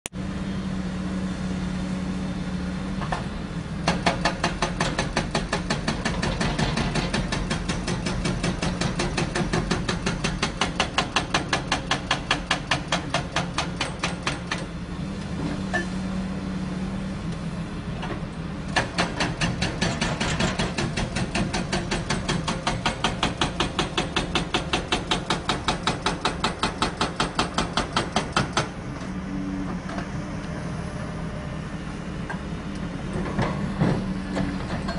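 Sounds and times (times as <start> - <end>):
diesel engine running: 0.2 - 13.8, 28.2 - 34.9
hydraulic breaker hammer pounding: 3.8 - 14.8, 18.8 - 28.8.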